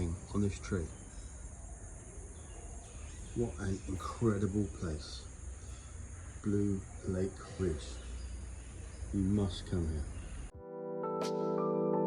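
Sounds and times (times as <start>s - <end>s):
faint outdoor ambience: 0.0s - 10.6s
sustained keyboard chords: 10.5s - 12.0s.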